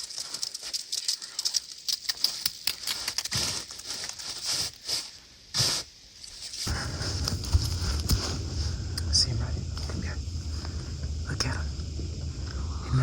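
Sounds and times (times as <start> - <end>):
small crackles: 0.0 - 12.6
clothing rustling: 3.1 - 8.8.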